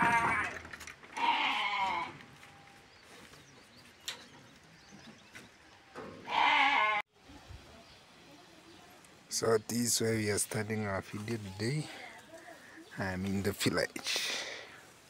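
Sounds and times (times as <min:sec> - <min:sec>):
sheep bleating: 0:01.2 - 0:02.2, 0:06.2 - 0:07.0.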